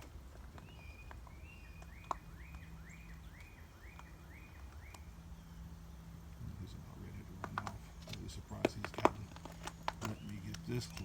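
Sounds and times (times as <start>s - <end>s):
faint low hum: 0.0s - 11.0s
bird whistling notes: 0.6s - 6.0s.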